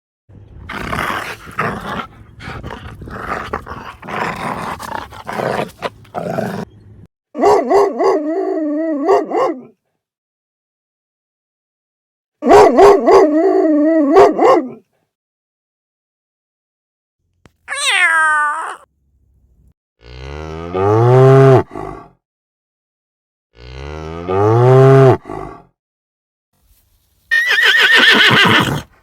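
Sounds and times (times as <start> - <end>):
rough noisy animal sound: 0.6 - 6.7.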